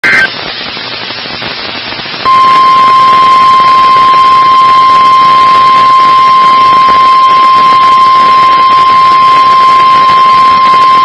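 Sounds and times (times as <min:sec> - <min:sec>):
radio hiss: 0:00.0 - 0:11.0
steady warning alarm tone: 0:02.3 - 0:11.0
two-pitch data squeal: 0:02.3 - 0:11.0.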